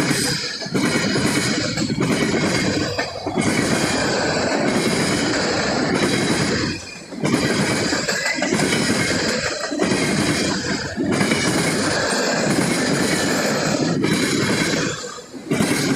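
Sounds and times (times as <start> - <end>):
train wheel squeal: 0.0 - 15.9
wheels clattering over rail joints: 0.0 - 15.9.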